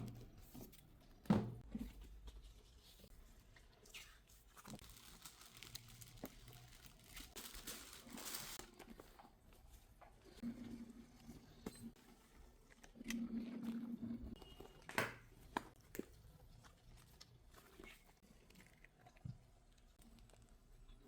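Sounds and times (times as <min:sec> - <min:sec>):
paper crinkling and rustling: 0:02.0 - 0:09.2.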